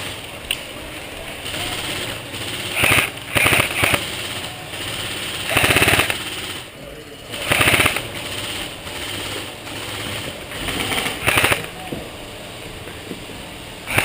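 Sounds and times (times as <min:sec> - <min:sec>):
airsoft guns full-auto bursts: 0:01.3 - 0:11.8.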